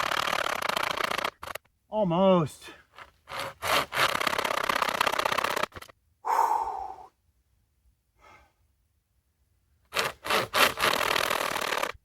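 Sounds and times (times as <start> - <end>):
pocket chainsaw rasping through log: 0.0 - 1.7, 2.9 - 6.0, 9.8 - 12.0
short breathy sound: 6.2 - 7.2, 8.1 - 8.8.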